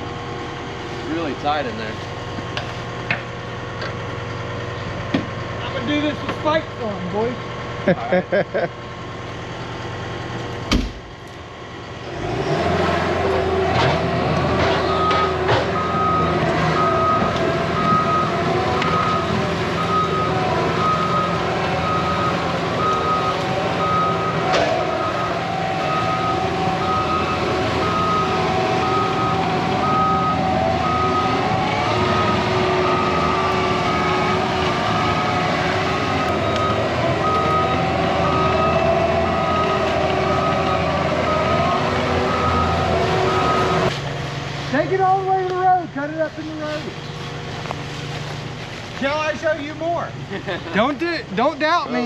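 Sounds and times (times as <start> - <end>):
backup alarm beeping: 14.8 - 43.9.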